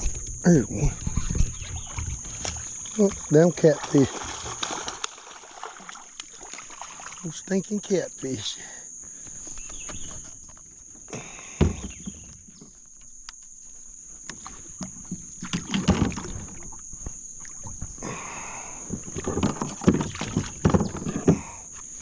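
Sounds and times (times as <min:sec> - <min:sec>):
crickets droning: 0:00.0 - 0:22.0
knocks against a kayak hull: 0:11.5 - 0:12.8, 0:18.9 - 0:21.5.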